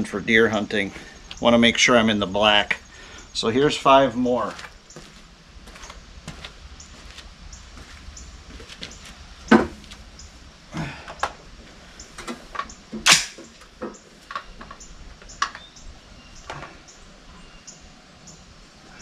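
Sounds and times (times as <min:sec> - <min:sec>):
light knocks and clatter: 0:08.5 - 0:10.0
rifle shots: 0:13.1 - 0:13.4.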